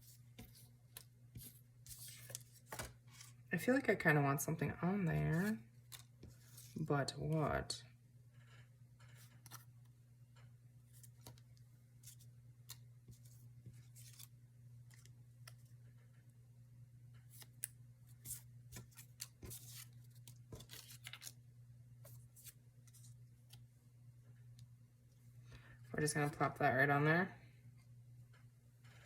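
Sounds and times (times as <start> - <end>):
hands handling paper: 0.0 - 3.4, 5.3 - 6.8, 9.1 - 9.7, 12.0 - 14.3, 17.3 - 21.4.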